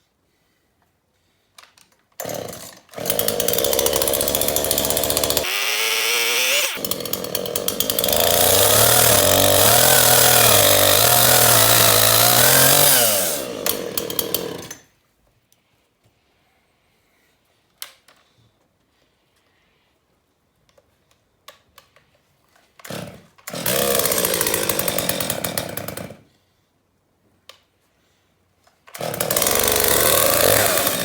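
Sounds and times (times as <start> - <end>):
chainsaws revving: 2.2 - 14.8, 22.9 - 26.2, 29.0 - 31.0.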